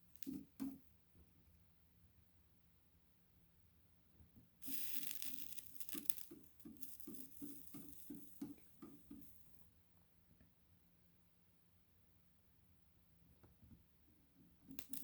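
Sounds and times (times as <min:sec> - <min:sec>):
scraping hiss: 0:04.6 - 0:09.4.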